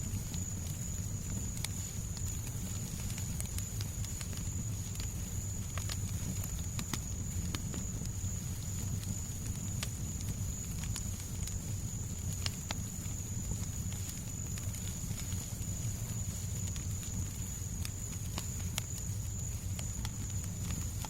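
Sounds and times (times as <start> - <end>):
fire crackling and popping: 0.0 - 21.0.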